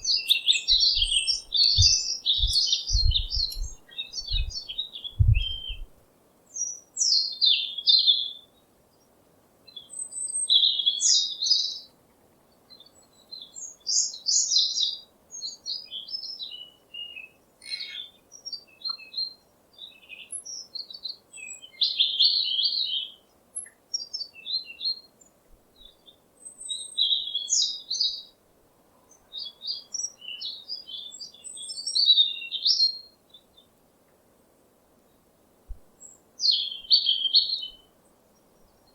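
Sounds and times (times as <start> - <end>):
songbirds chirping and singing: 0.0 - 5.9, 36.0 - 37.8
faint steady background hiss: 0.0 - 38.9.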